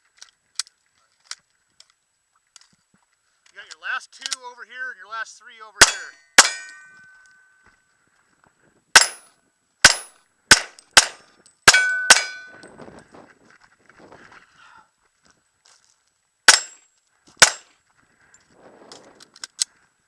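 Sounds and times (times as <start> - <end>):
handgun shots: 5.8 - 6.9, 9.0 - 12.6, 16.5 - 16.8, 17.4 - 17.6
steel target ringing: 5.8 - 7.6, 9.0 - 12.6.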